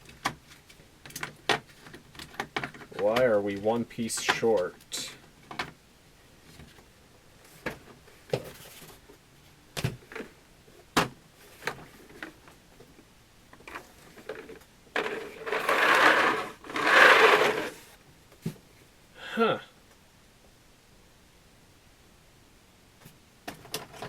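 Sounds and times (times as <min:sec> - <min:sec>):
scraping rustle: 0:13.7 - 0:18.0.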